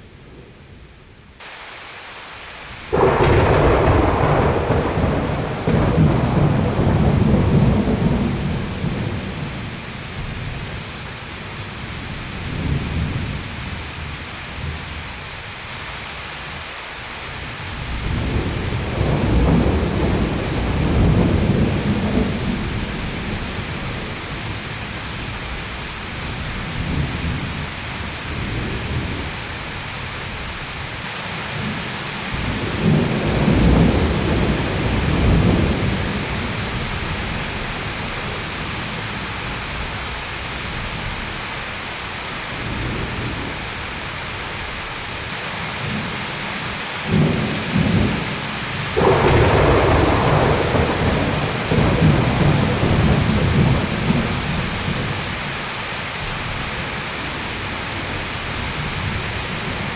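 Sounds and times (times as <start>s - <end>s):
steady rain: 0.0s - 59.9s
thunder rumbling: 2.8s - 15.0s, 17.6s - 30.9s, 31.7s - 41.4s, 47.0s - 55.6s.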